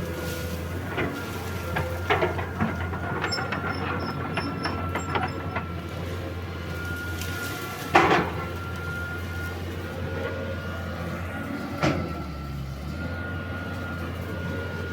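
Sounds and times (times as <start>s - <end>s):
diesel engine running: 0.0s - 14.9s
metallic clanks and knocks: 0.9s - 6.2s, 7.9s - 8.5s.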